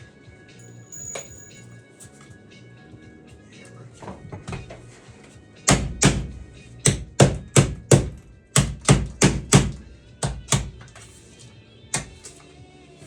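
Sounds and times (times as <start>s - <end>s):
metallic knocks of riveting: 5.7s - 11.1s.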